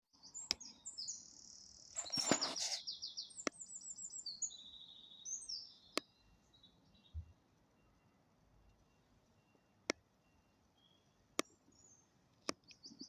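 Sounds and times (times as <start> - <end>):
songbirds trilling and chirping: 0.1 - 13.0
noisy rustle: 2.0 - 2.8.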